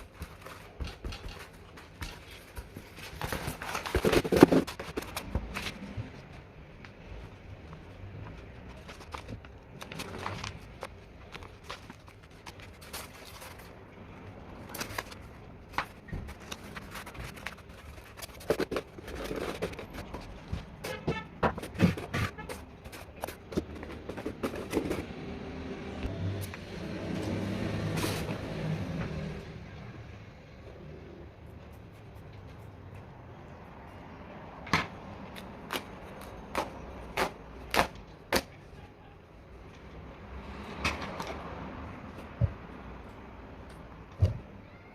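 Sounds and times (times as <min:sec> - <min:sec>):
hand tools clicking and scraping: 0:00.0 - 0:05.8, 0:14.6 - 0:25.1.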